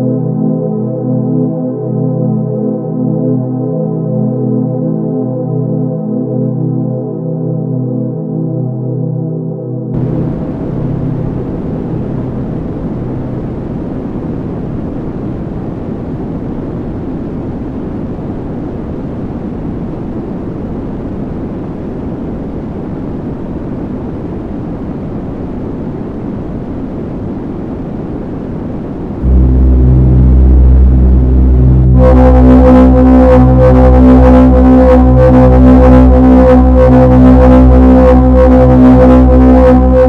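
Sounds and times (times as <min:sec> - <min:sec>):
loud low drone: 0:10.0 - 0:16.0, 0:29.1 - 0:40.0
rumbling noise music: 0:10.0 - 0:40.0.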